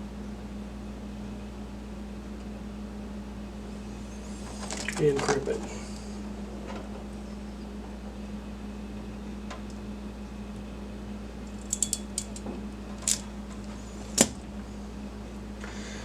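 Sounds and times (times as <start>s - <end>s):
steady low hum: 0.0s - 16.0s.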